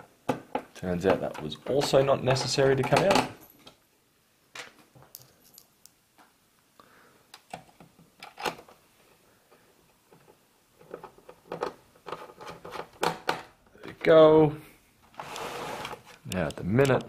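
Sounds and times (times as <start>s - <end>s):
computer parts clicking and knocking: 0.3s - 3.8s, 10.2s - 13.5s.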